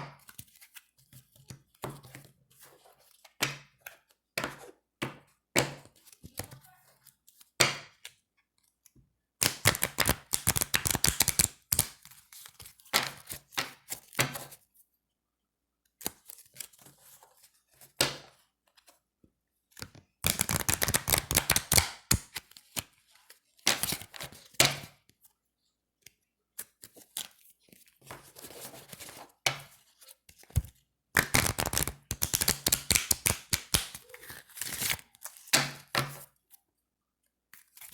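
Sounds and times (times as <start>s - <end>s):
playing cards riffle shuffling: 9.4s - 12.6s, 20.2s - 22.4s, 30.6s - 35.4s
cards rustling and tapping: 9.4s - 14.4s, 19.7s - 25.2s, 26.1s - 36.3s.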